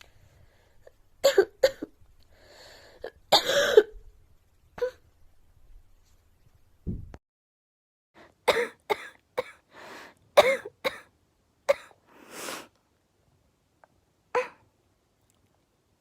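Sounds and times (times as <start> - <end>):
girl coughing: 3.3 - 4.0, 8.5 - 9.6, 10.4 - 11.1, 11.7 - 12.0.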